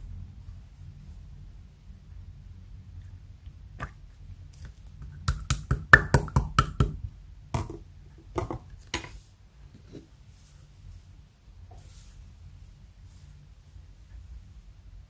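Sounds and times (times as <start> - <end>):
slime squeezed with wet pops: 3.8 - 7.0.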